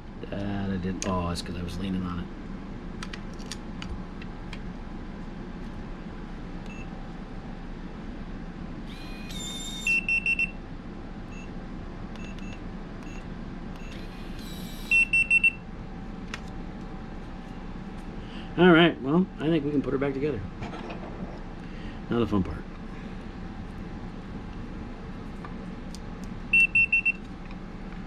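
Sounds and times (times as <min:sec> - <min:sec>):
keypad beeps: 0:09.3 - 0:10.5, 0:14.8 - 0:15.6, 0:26.5 - 0:27.2.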